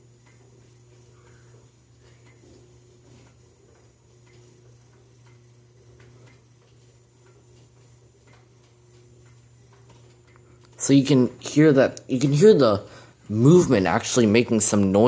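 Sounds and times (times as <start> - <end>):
steady low hum: 0.0 - 15.0
clock ticking and clicking: 3.3 - 11.2.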